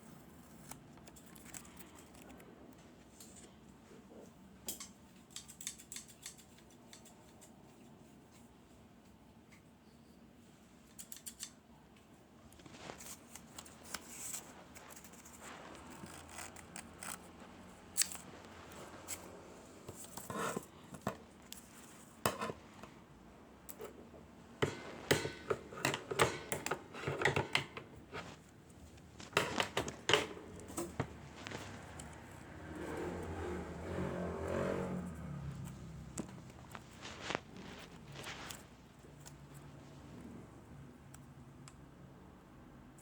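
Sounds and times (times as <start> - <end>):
clicks and taps of handled items: 24.6 - 28.4, 29.2 - 32.2
packaging rustling: 36.2 - 38.8.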